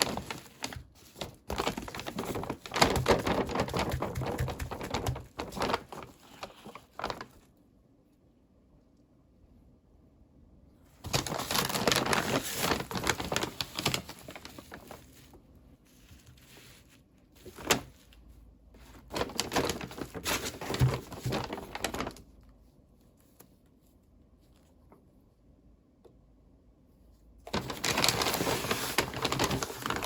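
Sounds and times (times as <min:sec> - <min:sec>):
packaging rustling and crinkling: 0:00.0 - 0:07.5, 0:11.0 - 0:22.4, 0:27.5 - 0:30.0.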